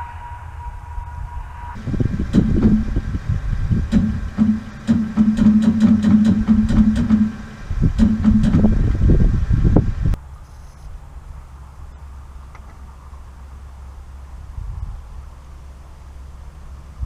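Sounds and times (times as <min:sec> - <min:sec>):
electric starter cranking engine: 0:01.8 - 0:09.0
irregular clicks and knocks: 0:02.3 - 0:03.0, 0:03.9 - 0:08.8.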